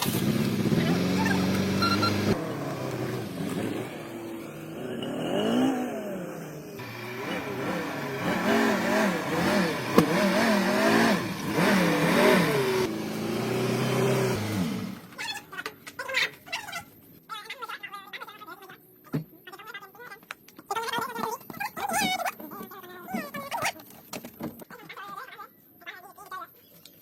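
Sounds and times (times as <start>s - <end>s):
car engine revving: 0.0s - 15.1s.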